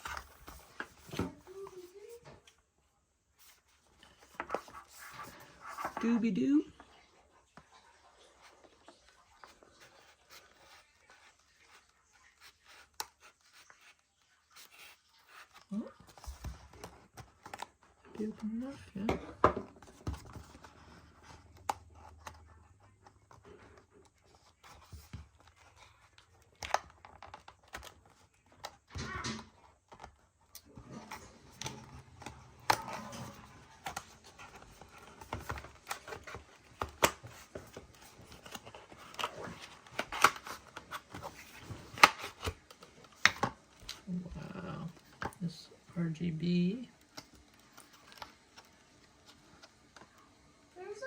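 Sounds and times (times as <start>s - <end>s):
packaging crinkling and rustling: 7.8s - 45.6s, 47.0s - 50.4s
plastic and cardboard clicks: 31.6s - 44.0s.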